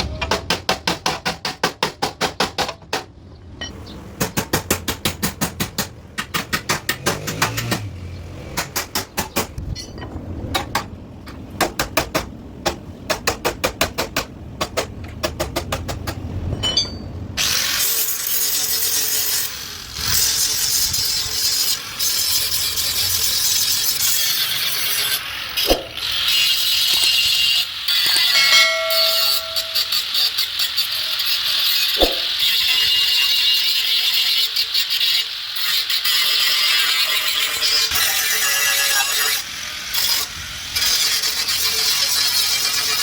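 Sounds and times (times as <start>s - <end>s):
metallic knocks: 12.6s - 17.3s, 28.1s - 30.0s, 32.0s - 32.3s
welder or grinder crackling: 17.4s - 43.0s.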